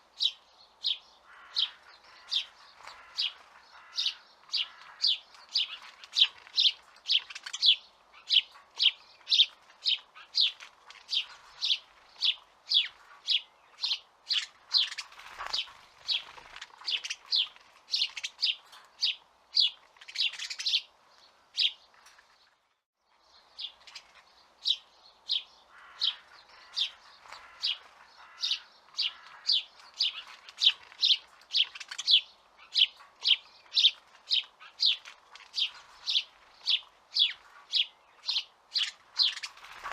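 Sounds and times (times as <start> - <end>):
small bird chirping: 0.0 - 39.9.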